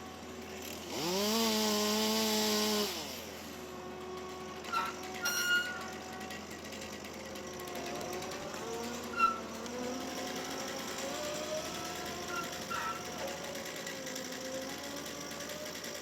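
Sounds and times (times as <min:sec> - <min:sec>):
high squeaks and clicks: 0:04.7 - 0:05.9, 0:09.0 - 0:09.6, 0:12.2 - 0:13.4
machinery whining: 0:07.8 - 0:16.0.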